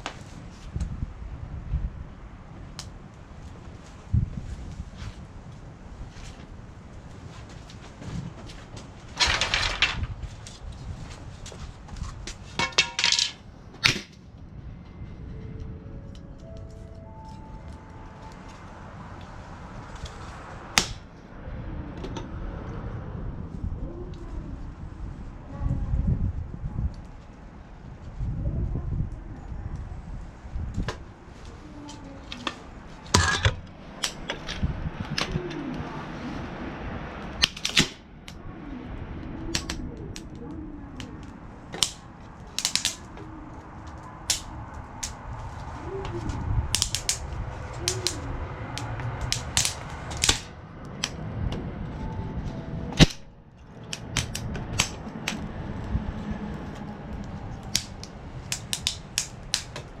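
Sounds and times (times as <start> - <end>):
metal parts clicking and clacking: 12.6 - 14.0, 32.3 - 34.6.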